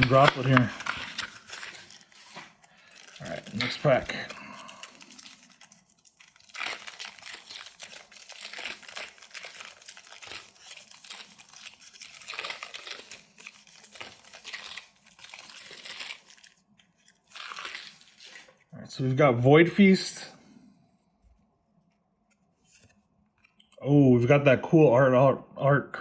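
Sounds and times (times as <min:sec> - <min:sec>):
plastic and foil crinkling and tearing: 0:00.0 - 0:18.7.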